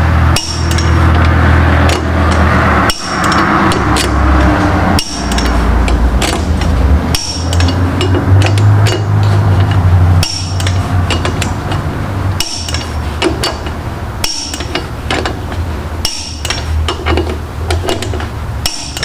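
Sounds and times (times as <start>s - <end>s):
steady low hum: 0.0s - 19.0s
ratchet and tool knocks: 0.3s - 4.2s, 4.9s - 19.0s
torque wrench clicks: 0.3s - 4.2s, 5.0s - 15.4s.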